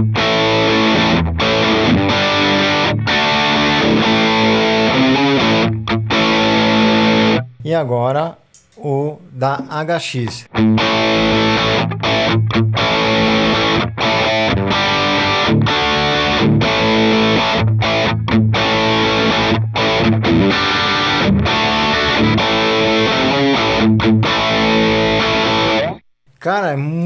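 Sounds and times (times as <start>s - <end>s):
overdriven electric guitar riff: 0.0s - 7.5s, 10.6s - 26.0s.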